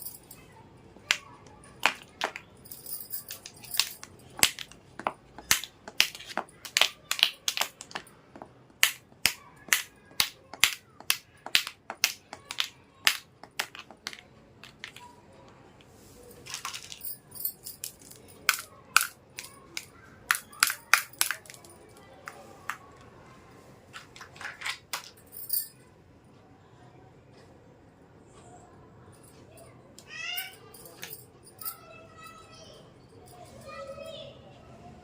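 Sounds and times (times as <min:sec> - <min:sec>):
plastic toy pieces clicking: 0:01.8 - 0:08.1, 0:08.7 - 0:15.1, 0:16.4 - 0:21.8.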